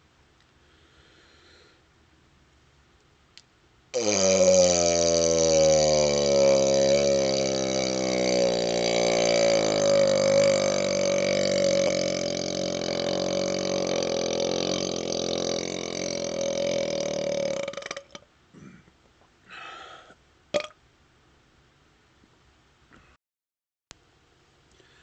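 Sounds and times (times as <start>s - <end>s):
faint breaths: 0.6s - 1.9s, 18.6s - 20.2s, 24.7s - 25.0s
man burping: 4.0s - 19.8s, 20.6s - 20.8s.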